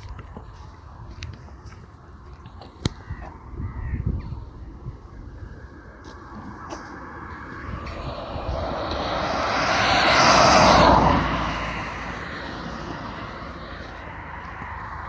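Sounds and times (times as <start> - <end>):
passing vehicle rushing: 6.5 - 15.0.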